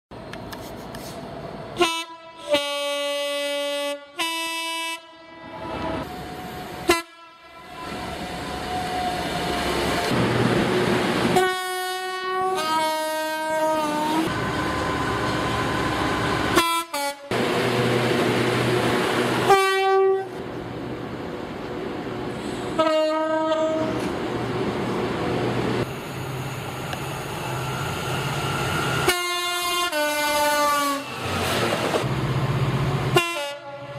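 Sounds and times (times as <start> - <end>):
passing train rumbling: 0.1 - 33.9
train horns: 1.8 - 6.1, 6.7 - 9.2, 11.3 - 14.3, 16.5 - 17.4, 19.4 - 20.4, 22.7 - 24.0, 29.0 - 31.2, 33.1 - 33.9.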